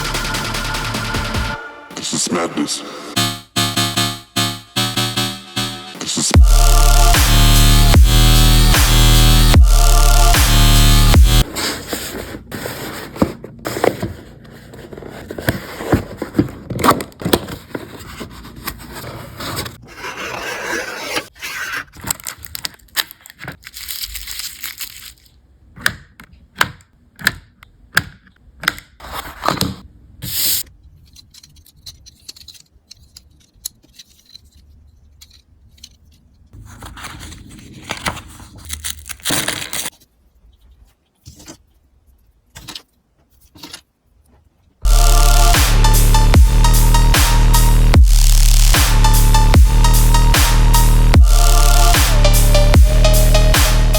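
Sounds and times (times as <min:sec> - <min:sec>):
cardboard and plastic rustling: 0:11.4 - 0:20.0, 0:21.2 - 0:25.4, 0:31.9 - 0:44.6.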